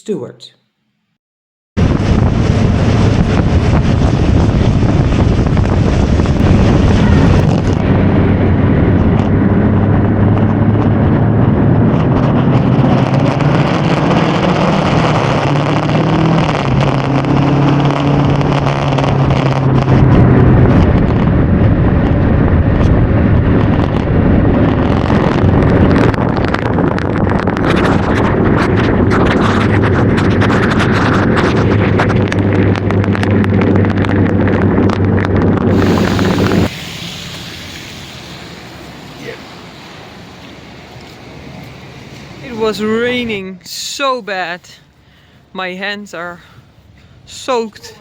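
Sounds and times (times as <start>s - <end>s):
motorcycle engine running: 1.8s - 37.6s
wind noise on microphone: 1.8s - 48.0s.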